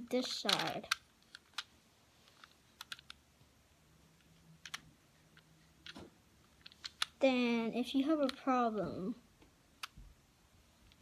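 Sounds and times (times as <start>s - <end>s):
puzzle cube plastic clicks: 0.1s - 1.7s, 2.3s - 3.2s, 4.2s - 7.2s, 8.2s - 8.4s.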